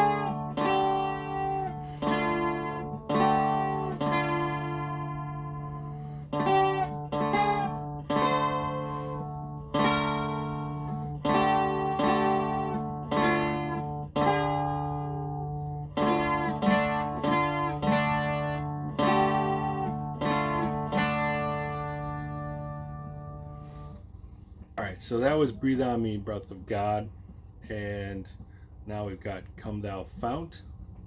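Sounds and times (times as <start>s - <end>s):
dulcimer melody strummed: 0.0s - 24.0s.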